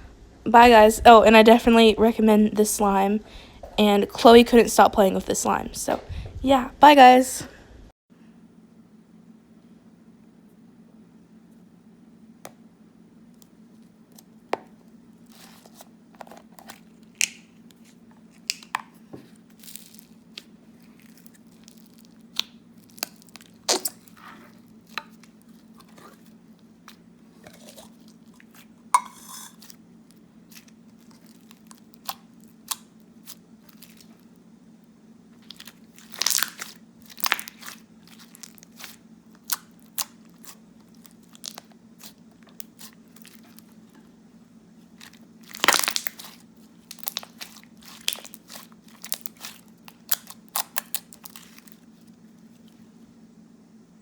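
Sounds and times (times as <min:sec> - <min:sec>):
steady low hum: 0:00.0 - 0:54.0
slime crunching and popping: 0:15.3 - 0:28.6, 0:29.6 - 0:34.4, 0:35.4 - 0:44.0, 0:45.0 - 0:52.2.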